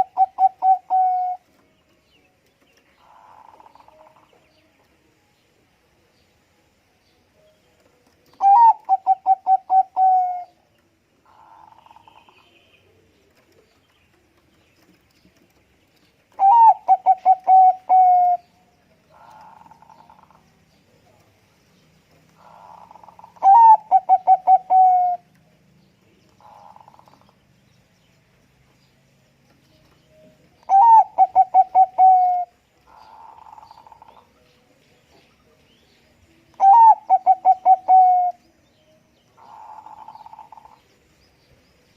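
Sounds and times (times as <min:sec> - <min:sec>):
dove cooing: 0:00.0 - 0:01.5, 0:08.4 - 0:10.6, 0:16.3 - 0:18.5, 0:19.1 - 0:20.4, 0:22.4 - 0:25.4, 0:30.7 - 0:34.4, 0:36.6 - 0:38.4, 0:39.4 - 0:40.9.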